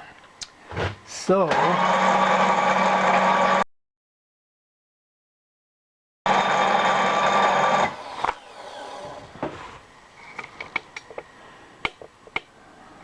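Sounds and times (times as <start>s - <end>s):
milling machine motor running: 1.5s - 3.6s, 6.3s - 9.2s.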